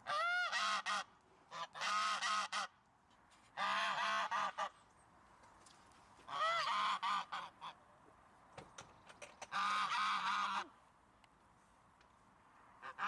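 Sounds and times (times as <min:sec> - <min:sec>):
goose honking: 0:00.0 - 0:02.8, 0:03.6 - 0:04.8, 0:06.3 - 0:07.8, 0:09.5 - 0:10.7.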